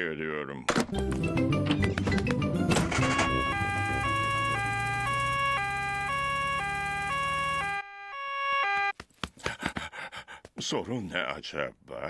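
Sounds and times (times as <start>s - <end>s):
cartoon two-tone siren: 2.8s - 8.9s.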